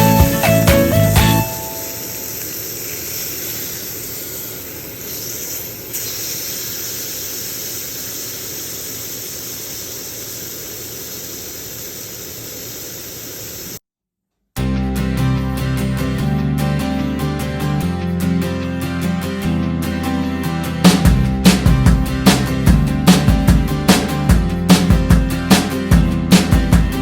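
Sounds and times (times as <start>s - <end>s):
steady hissing noise: 1.4s - 13.8s.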